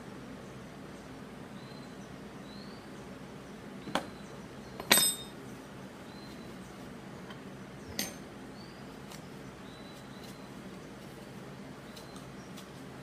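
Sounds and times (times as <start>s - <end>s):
metal tool clinking on brass: 4.8s - 5.4s.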